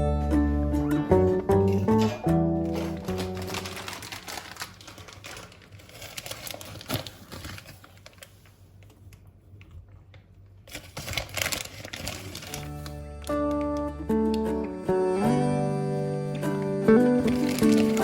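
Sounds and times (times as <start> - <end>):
hands crinkling material: 2.6 - 9.2, 10.7 - 14.0, 17.2 - 18.0.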